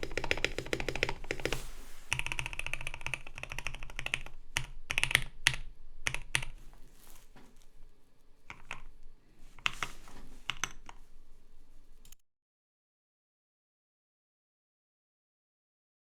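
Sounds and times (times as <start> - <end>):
mechanical keyboard typing: 0.0 - 6.6, 8.5 - 9.0, 9.6 - 11.1.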